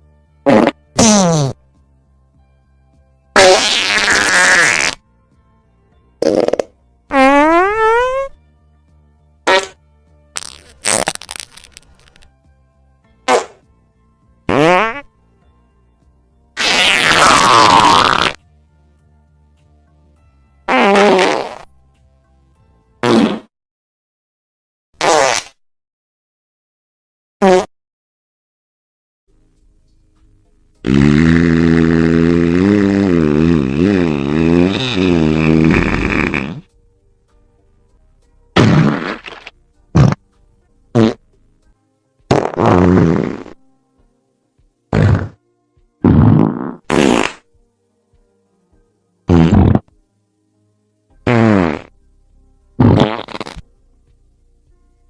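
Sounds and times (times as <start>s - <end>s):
faint music: 0.0s - 23.3s, 29.3s - 55.0s
farts: 0.4s - 1.6s, 3.3s - 5.0s, 6.2s - 8.4s, 9.4s - 12.3s, 13.3s - 13.6s, 14.5s - 15.1s, 16.6s - 18.4s, 20.7s - 21.7s, 23.0s - 23.5s, 25.0s - 25.6s, 27.4s - 27.7s, 30.8s - 36.7s, 38.6s - 40.2s, 40.9s - 41.2s, 42.3s - 43.6s, 44.9s - 45.4s, 46.0s - 47.5s, 49.3s - 50.0s, 51.2s - 51.9s, 52.8s - 53.7s.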